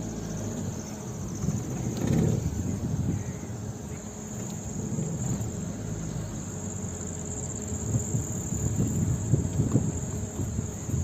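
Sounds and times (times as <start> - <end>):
insects trilling: 0.0 - 11.0
low uneven rumble: 0.0 - 11.0.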